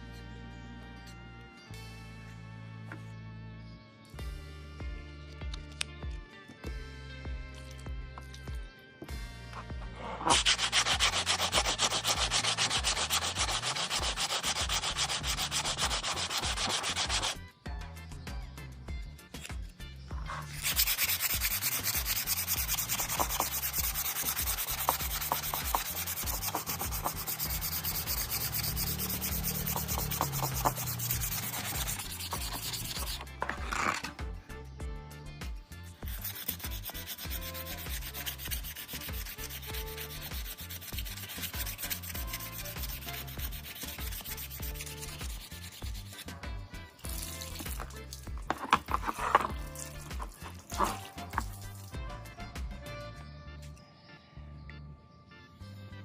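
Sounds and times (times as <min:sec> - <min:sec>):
sanding plastic bumper: 0:10.2 - 0:17.4, 0:20.6 - 0:34.0, 0:36.1 - 0:46.2.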